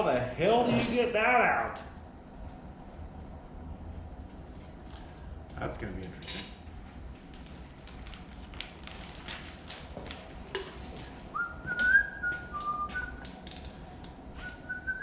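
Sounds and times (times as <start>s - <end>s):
man whistling a tune: 11.3s - 13.3s, 14.4s - 15.0s.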